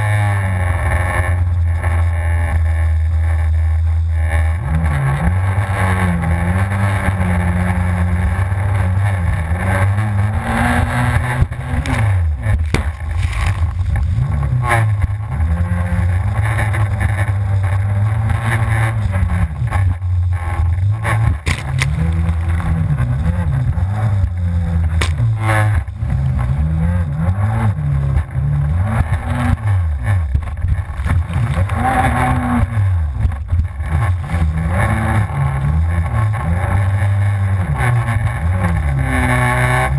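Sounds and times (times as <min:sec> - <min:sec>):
personal watercraft engine revving: 0:00.0 - 0:39.9
sharp knocks: 0:21.4 - 0:22.4, 0:25.0 - 0:25.4.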